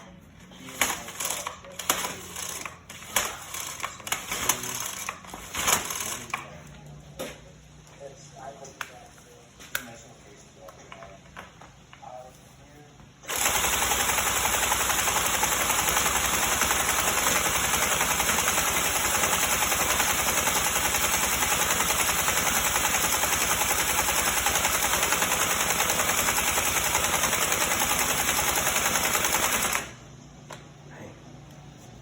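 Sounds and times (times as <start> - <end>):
string trimmer engine spinning: 13.3 - 30.0.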